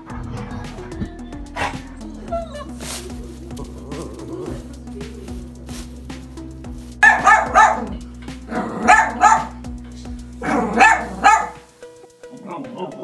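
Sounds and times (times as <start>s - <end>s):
dog barking: 0.0s - 2.1s, 7.0s - 7.9s, 8.9s - 9.6s, 10.4s - 11.6s.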